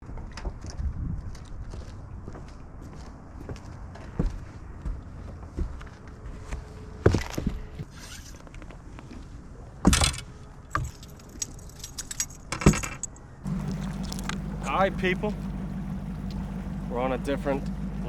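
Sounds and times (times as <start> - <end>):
metal jangling: 10.8 - 14.4
low steady hum: 13.4 - 18.0.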